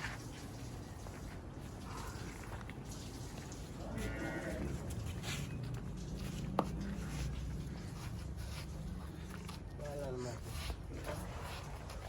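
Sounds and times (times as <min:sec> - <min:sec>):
animal bleating: 0:03.8 - 0:04.9.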